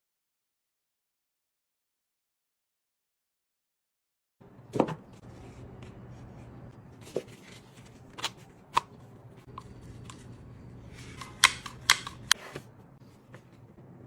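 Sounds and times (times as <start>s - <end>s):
steady low hum: 4.4s - 14.0s
small tools clicking and tapping: 11.1s - 12.4s.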